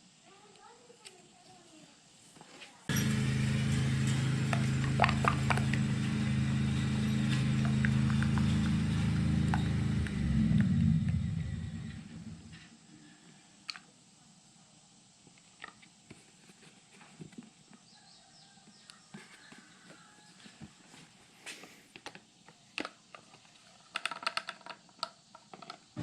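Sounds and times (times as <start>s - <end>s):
motor-driven machine running: 2.9s - 12.7s.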